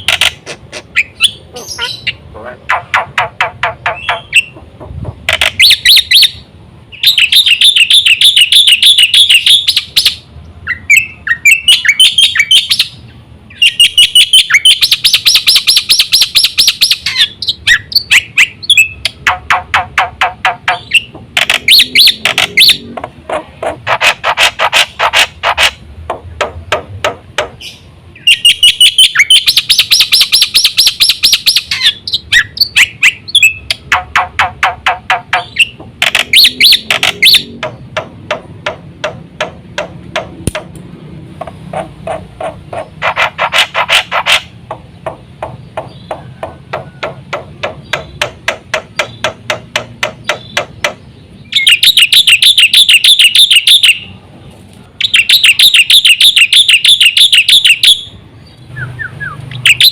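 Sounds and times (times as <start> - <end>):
bird harsh chattering song: 0.0 - 25.8, 27.6 - 38.8, 41.7 - 54.2, 55.0 - 59.9
bird rapid clicking notes: 17.9 - 22.8, 32.6 - 40.8, 41.7 - 51.0.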